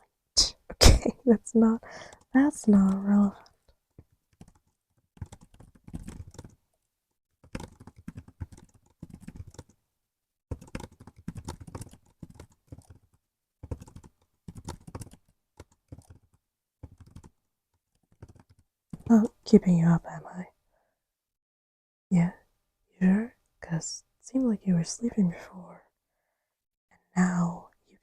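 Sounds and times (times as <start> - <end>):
typing on laptop keyboard: 4.0 - 6.7, 7.4 - 9.8, 10.5 - 19.1.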